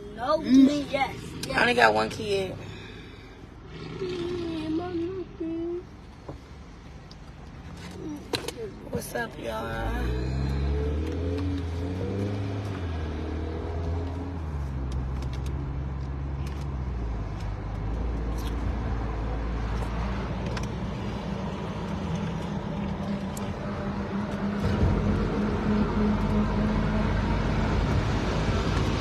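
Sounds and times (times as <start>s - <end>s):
car cabin road and engine rumble: 0.0s - 29.0s.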